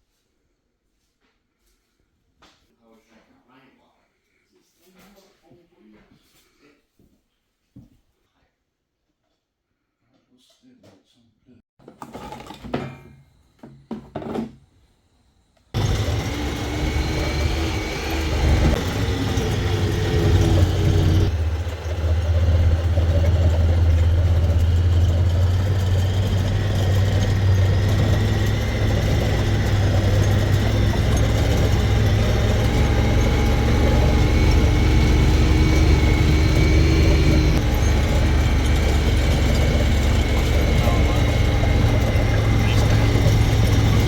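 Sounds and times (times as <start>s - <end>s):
engine running: 15.8s - 44.0s.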